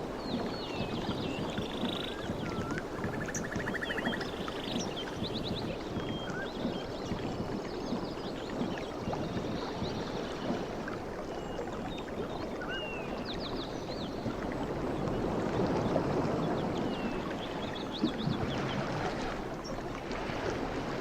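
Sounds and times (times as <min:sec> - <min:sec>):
sea waves washing: 0:00.0 - 0:12.6
small birds chirping: 0:00.3 - 0:07.1.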